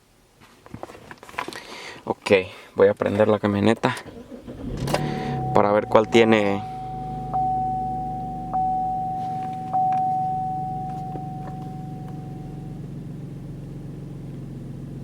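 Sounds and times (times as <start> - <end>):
car engine idling: 3.9 - 15.0
dashboard warning chime: 5.0 - 12.8.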